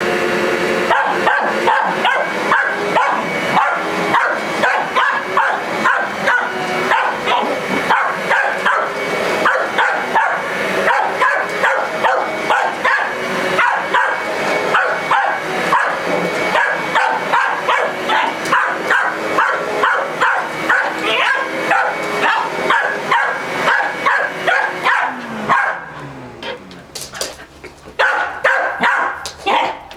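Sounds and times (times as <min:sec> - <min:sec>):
vacuum cleaner humming: 0:00.0 - 0:29.9
dog barking: 0:00.8 - 0:26.6, 0:27.9 - 0:29.9.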